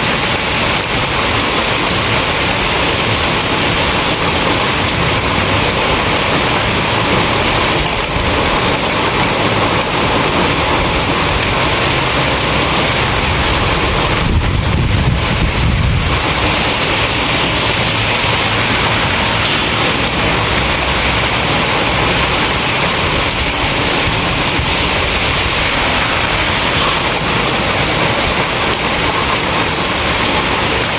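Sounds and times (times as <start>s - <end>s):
heavy rain: 0.0s - 30.9s
low rumble: 11.1s - 30.0s.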